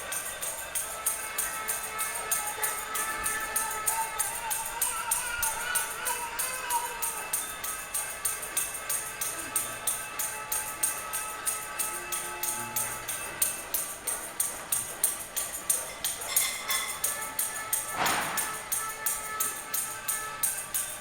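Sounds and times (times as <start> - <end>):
pots and pans banging: 14.0 - 18.7.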